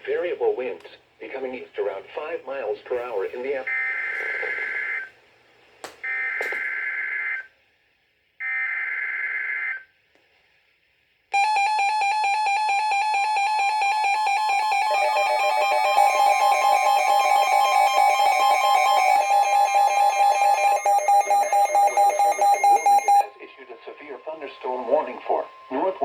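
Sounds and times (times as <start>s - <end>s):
screechy two-tone digital data bursts: 12.4s - 26.0s
rapidly pulsing alert tone: 12.8s - 26.0s.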